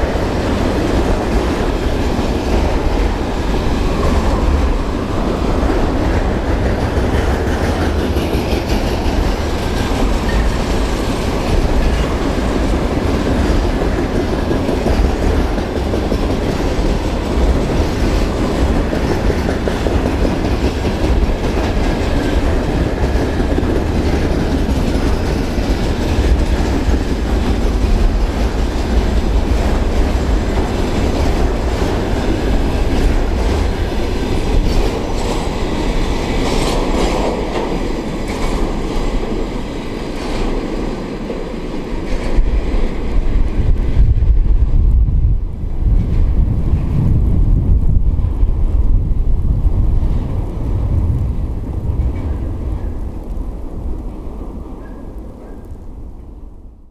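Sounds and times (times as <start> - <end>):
train wheels clicking over rail joints: 0.0 - 44.8.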